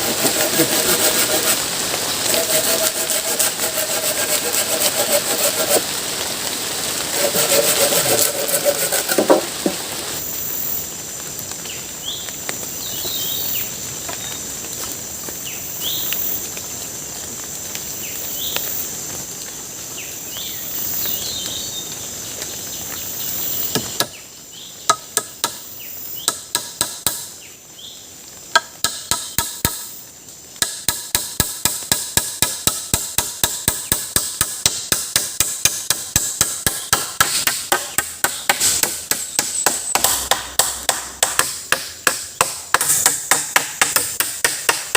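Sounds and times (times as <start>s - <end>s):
insect drone: 0.0s - 44.9s
tool knocking on wood: 7.3s - 9.8s, 30.9s - 44.9s.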